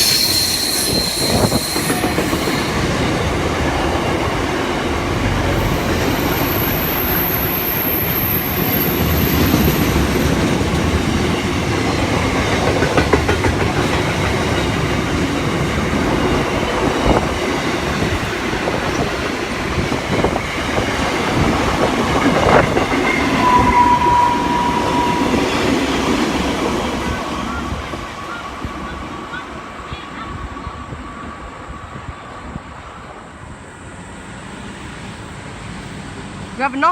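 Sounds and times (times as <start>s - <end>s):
train wheel squeal: 0.0s - 3.3s, 4.8s - 13.1s, 22.3s - 29.5s
freight train wagons rolling: 0.0s - 30.0s.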